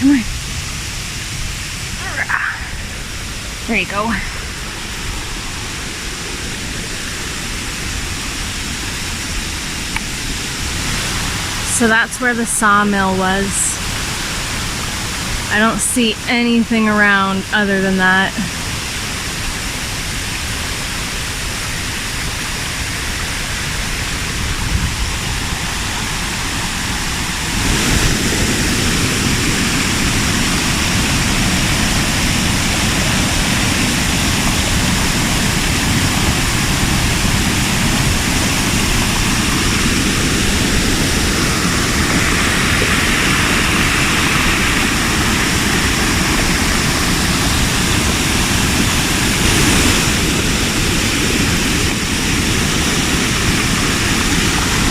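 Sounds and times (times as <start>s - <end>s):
waterfall rushing: 0.0s - 54.9s.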